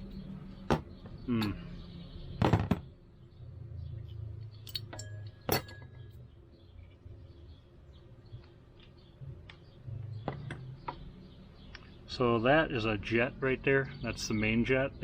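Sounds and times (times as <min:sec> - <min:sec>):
metallic clicks and clinks: 0:04.0 - 0:06.2.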